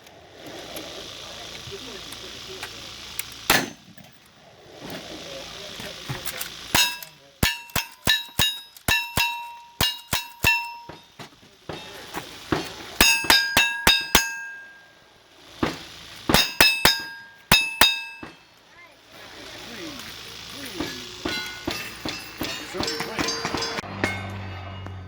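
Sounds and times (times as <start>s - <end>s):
steel target clanging: 3.4s - 4.0s, 6.2s - 18.5s, 20.1s - 25.0s
gunshots: 3.5s - 3.9s, 15.6s - 18.4s.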